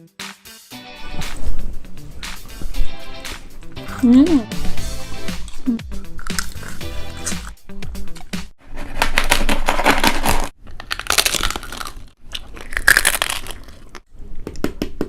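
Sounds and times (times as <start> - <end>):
food crunching and crackling: 5.3 - 14.1.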